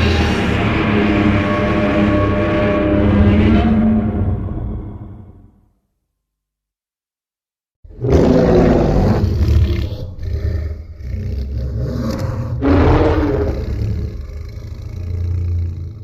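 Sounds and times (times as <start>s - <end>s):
deep rumble: 0.0s - 5.5s
monster roar: 7.9s - 16.0s.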